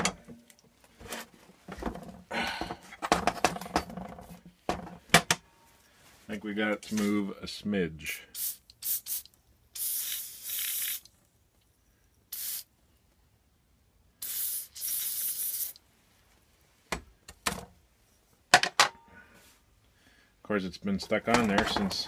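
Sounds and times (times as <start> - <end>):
aerosol can spraying: 8.4 - 11.1, 12.3 - 12.7, 14.2 - 15.8.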